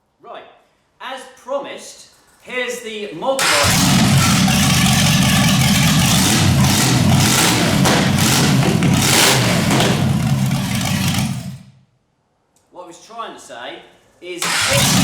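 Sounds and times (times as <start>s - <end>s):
v-eight engine running loudly: 3.4s - 11.6s, 14.4s - 15.0s.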